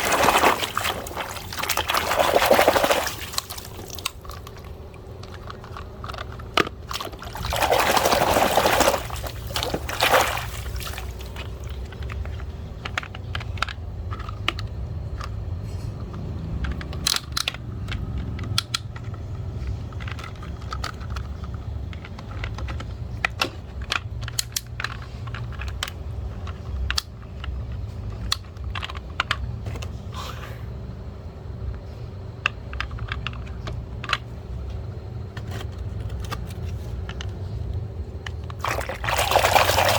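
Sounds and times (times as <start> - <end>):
water rushing: 0.0 - 4.2, 7.2 - 11.4
plastic toys clicking and knocking: 2.7 - 30.0, 31.5 - 39.9.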